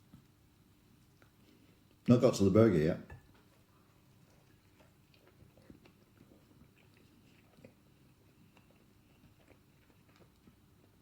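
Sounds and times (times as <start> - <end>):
man chewing: 3.3 - 11.0.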